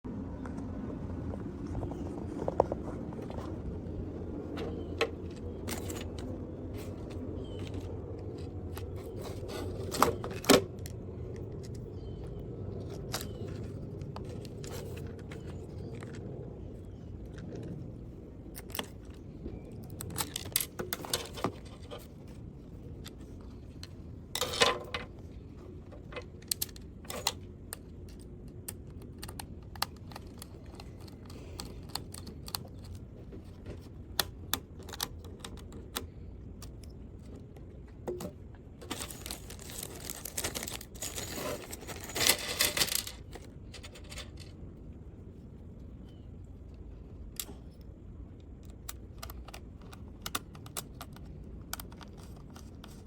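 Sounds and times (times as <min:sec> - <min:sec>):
small parts clicking and knocking: 0:25.8 - 0:44.6
packaging rustling and crinkling: 0:38.8 - 0:44.1.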